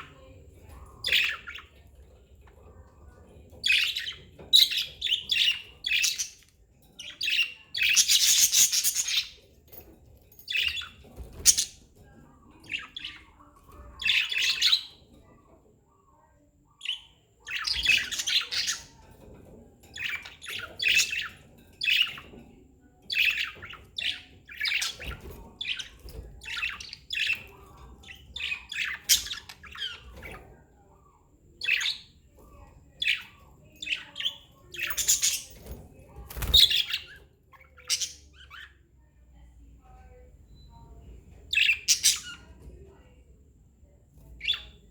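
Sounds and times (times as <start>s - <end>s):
budgerigars chirping: 16.9s - 19.0s.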